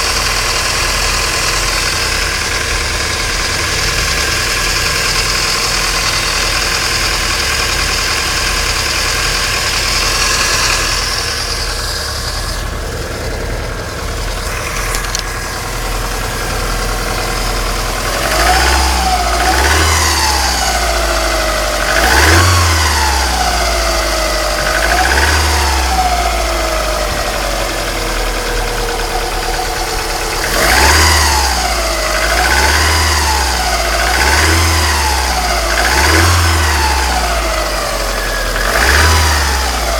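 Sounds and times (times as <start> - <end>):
car engine idling: 0.0 - 39.9
engine revving: 0.0 - 39.9.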